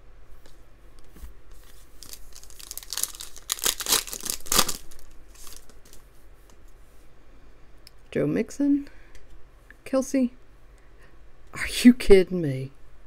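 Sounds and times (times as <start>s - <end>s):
wrapper tearing and crinkling: 2.0s - 6.0s.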